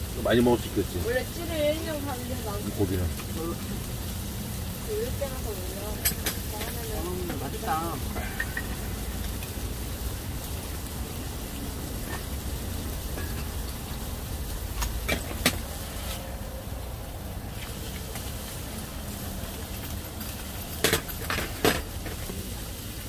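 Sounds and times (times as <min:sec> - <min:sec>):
steady low rumble: 0:00.9 - 0:20.1
utensils clinking on dishes: 0:05.9 - 0:09.6, 0:13.1 - 0:13.8, 0:19.0 - 0:22.3.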